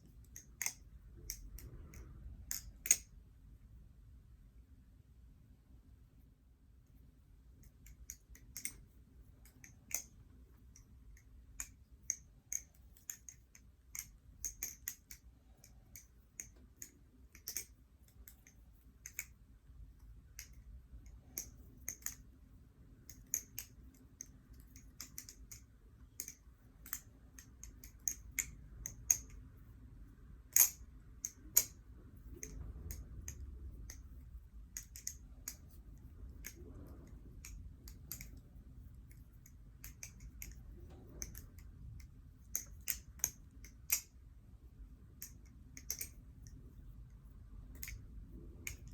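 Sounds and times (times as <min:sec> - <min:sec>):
butterfly knife clicking: 0:00.3 - 0:01.7, 0:23.1 - 0:25.6, 0:34.8 - 0:35.6, 0:42.5 - 0:44.1, 0:45.2 - 0:46.1.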